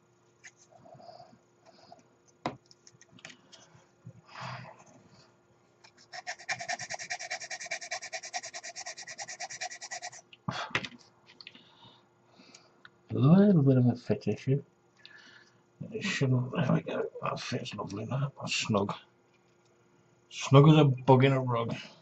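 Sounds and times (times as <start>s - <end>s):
file rasping plastic: 6.0s - 10.2s.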